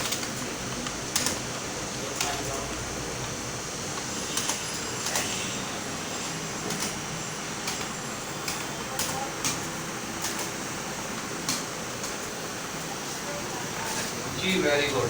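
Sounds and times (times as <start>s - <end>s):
keyboard keys clicking: 0.0s - 5.3s, 7.6s - 10.6s.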